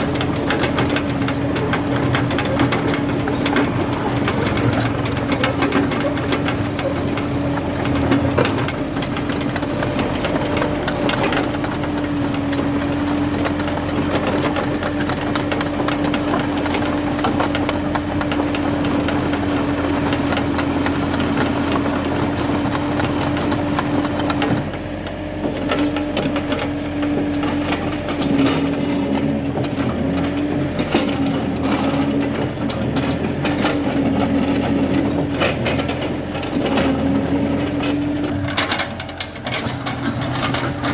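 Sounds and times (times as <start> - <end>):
excavator engine running: 0.0 - 40.9
machine clicks and knocks: 25.5 - 40.9.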